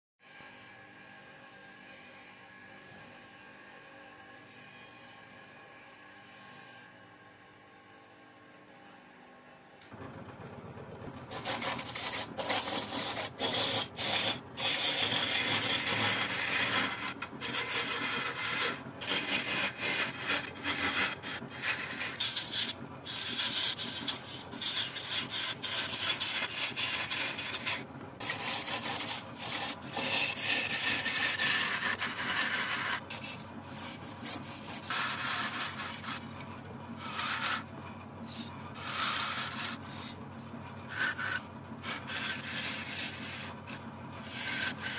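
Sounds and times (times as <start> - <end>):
lathe tool scraping wood: 11.3 - 44.9.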